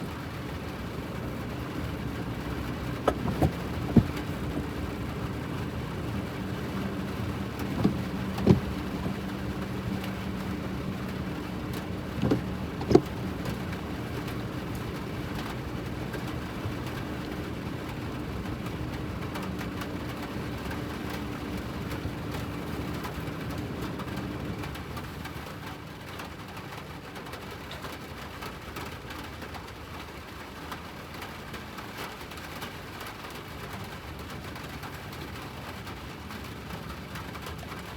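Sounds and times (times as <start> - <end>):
excavator diesel engine humming: 0.0 - 22.3
sharp knocks: 3.0 - 4.2, 7.8 - 9.2.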